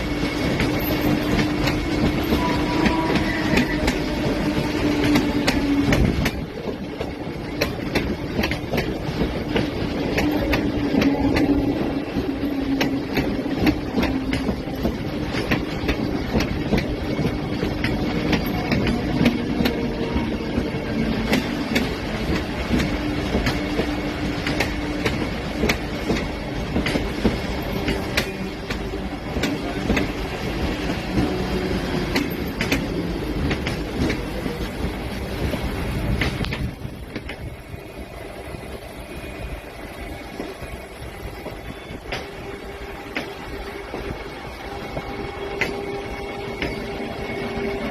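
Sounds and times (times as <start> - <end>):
electric train rumble and hum: 0.0 - 47.9.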